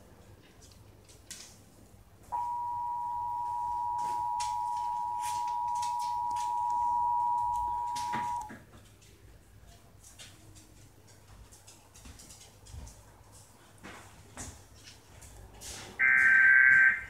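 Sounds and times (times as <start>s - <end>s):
two-tone alert signal: 2.4s - 8.5s, 16.0s - 17.0s.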